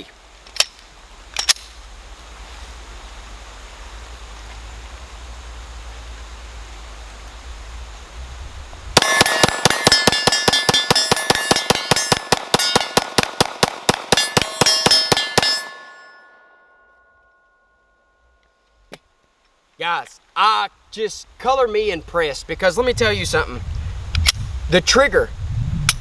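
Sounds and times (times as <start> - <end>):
low background noise: 0.0 - 25.4
pistol shots rapid fire: 9.0 - 15.7
metallic ringing clangs: 9.0 - 18.4.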